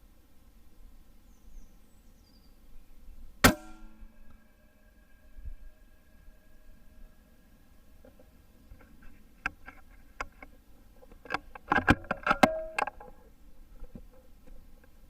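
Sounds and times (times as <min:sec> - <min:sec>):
brief metallic ring: 0:03.4 - 0:04.2
sharp mechanical clicks and knocks: 0:11.1 - 0:13.1.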